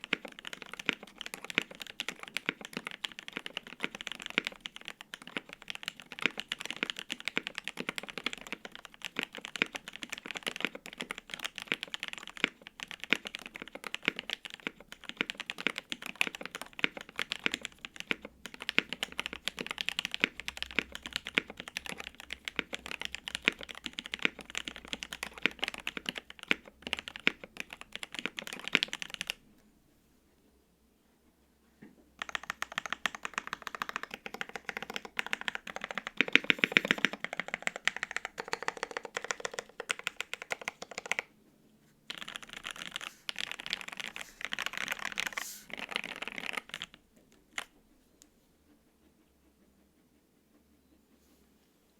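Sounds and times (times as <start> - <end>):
fast typing on mechanical keyboard: 0.0 - 29.4, 32.2 - 41.3, 42.1 - 47.8.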